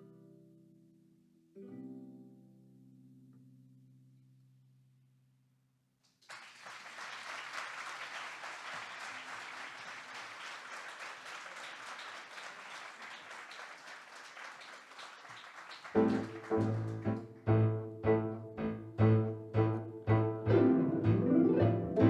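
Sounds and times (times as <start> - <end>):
audience applause: 6.2 - 17.7.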